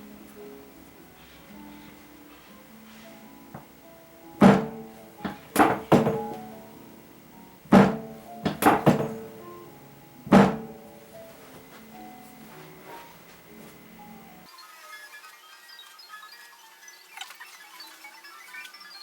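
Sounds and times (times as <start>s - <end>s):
soft acoustic guitar music: 0.0s - 14.5s
sharp thumps of body adjustment: 4.4s - 6.4s, 7.7s - 9.3s, 10.3s - 10.8s.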